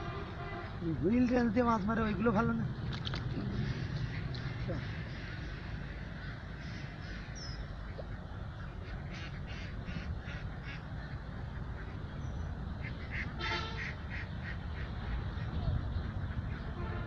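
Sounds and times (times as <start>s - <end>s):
birds calling: 0.0s - 17.0s
long nasal bird call: 3.5s - 17.0s.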